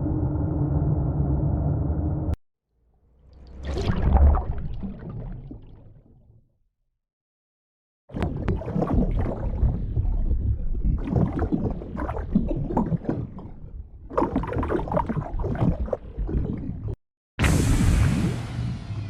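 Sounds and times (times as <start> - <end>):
water splashing and gurgling: 3.5 - 6.3, 8.2 - 18.4.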